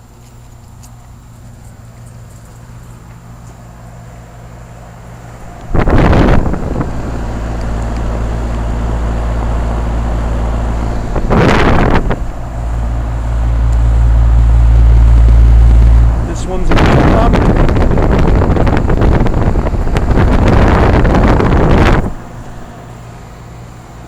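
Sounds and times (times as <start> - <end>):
wind buffeting microphone: 5.5 - 22.7.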